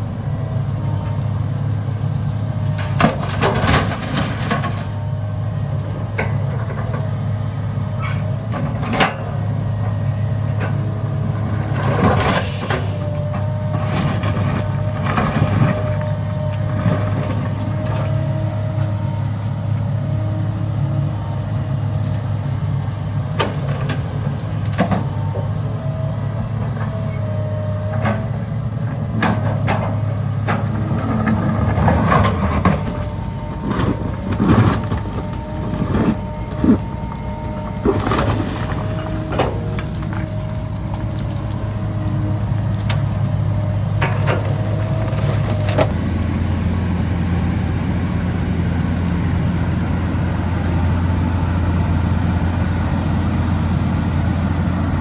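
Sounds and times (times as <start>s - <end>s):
diesel machinery engine hum: 0.0s - 55.0s.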